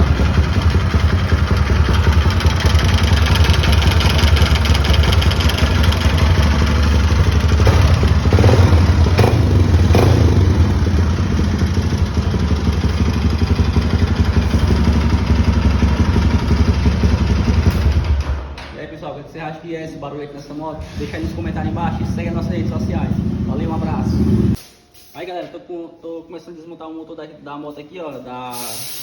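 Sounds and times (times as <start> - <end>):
motorcycle engine idling: 0.0 - 18.4, 20.8 - 24.6.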